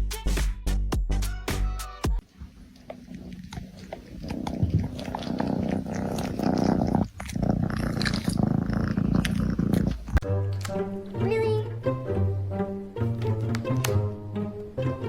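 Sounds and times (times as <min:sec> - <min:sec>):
animal growling: 0:02.7 - 0:10.2.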